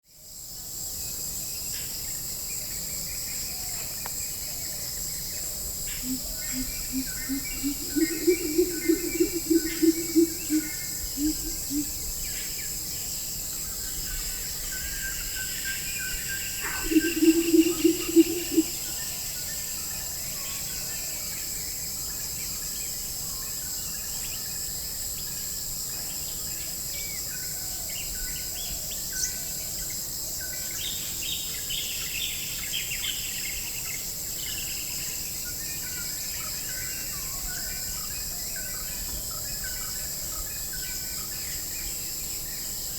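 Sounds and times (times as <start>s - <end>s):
high-pitched insect drone: 5.2s - 21.4s
bird chirps and calls: 16.6s - 18.8s.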